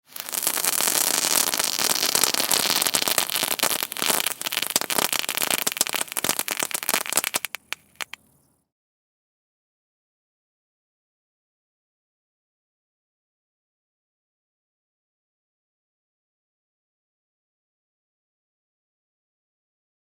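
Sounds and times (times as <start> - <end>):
firework crackling and popping: 0.0 - 8.3.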